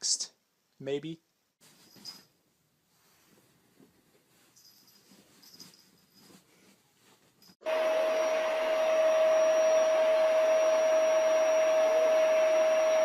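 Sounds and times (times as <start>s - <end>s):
electric motor whining: 7.7s - 13.0s.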